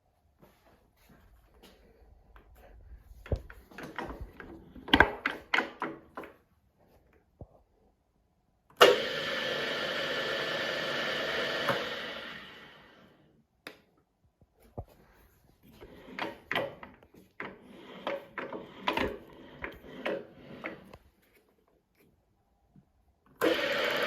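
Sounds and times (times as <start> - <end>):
drill motor running: 8.8 - 13.0, 23.4 - 24.0.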